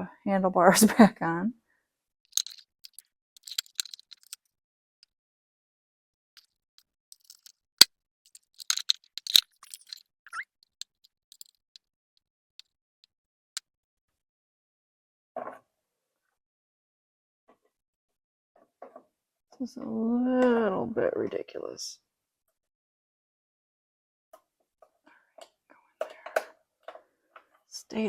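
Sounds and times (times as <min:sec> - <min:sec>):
tools and parts clicking: 0:02.3 - 0:04.4, 0:07.1 - 0:07.6, 0:08.3 - 0:11.6.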